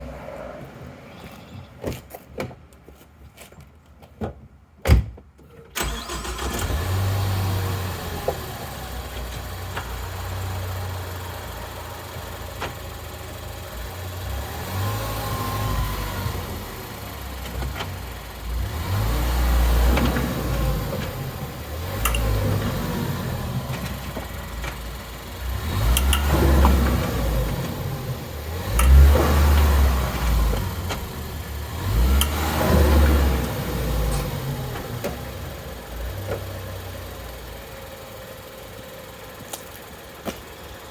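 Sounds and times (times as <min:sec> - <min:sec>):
car running noise: 0:05.8 - 0:40.9
wheel bearing low rumble: 0:15.4 - 0:37.8
clicks: 0:21.9 - 0:22.5, 0:25.9 - 0:27.8, 0:28.7 - 0:31.2, 0:32.0 - 0:32.4.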